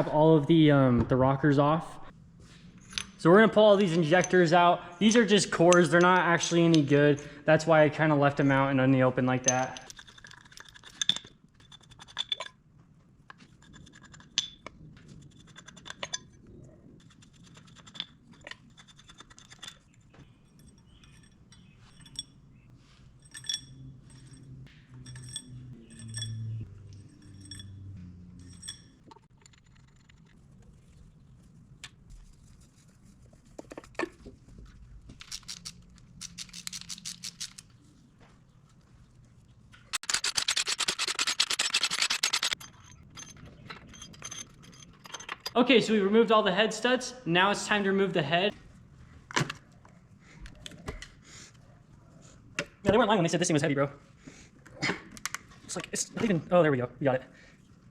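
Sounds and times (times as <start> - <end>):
metal engine parts clinking: 9.4 - 12.7, 13.3 - 16.4, 17.0 - 30.6, 35.1 - 37.8, 39.9 - 45.6
sharp metallic clicks: 35.2 - 37.7, 39.8 - 45.6.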